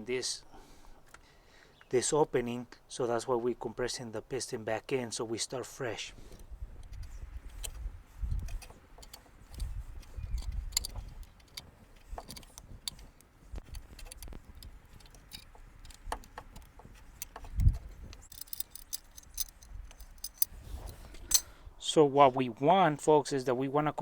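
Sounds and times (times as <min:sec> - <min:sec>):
light metallic clicks and clinks: 0:06.3 - 0:21.6.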